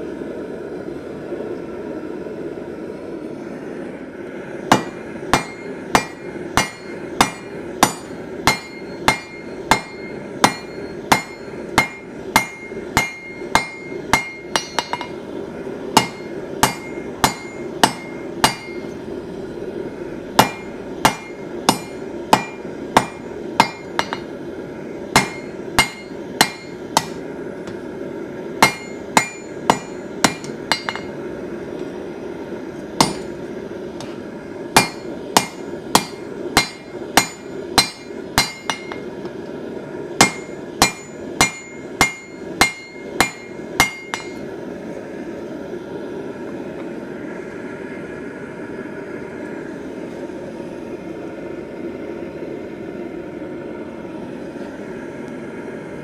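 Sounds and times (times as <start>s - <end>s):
hammer striking steel on anvil: 4.7s - 15.2s, 16.0s - 19.0s, 20.4s - 24.4s, 25.1s - 27.9s, 28.6s - 31.2s, 33.0s - 39.4s, 40.2s - 44.5s.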